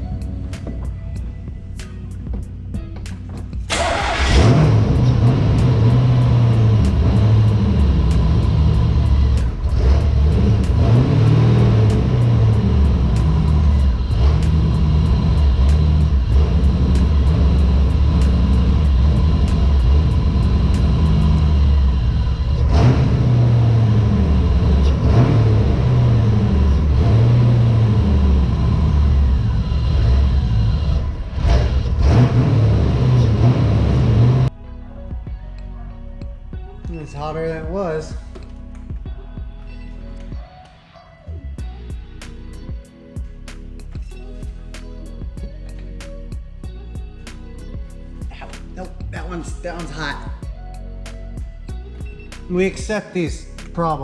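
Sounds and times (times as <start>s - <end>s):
background music: 0.0s - 54.0s
car engine running: 2.2s - 34.5s.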